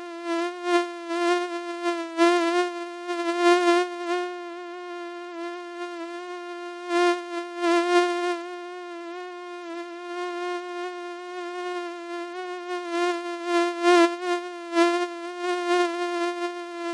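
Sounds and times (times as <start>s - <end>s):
mosquito buzzing: 0.0s - 16.9s.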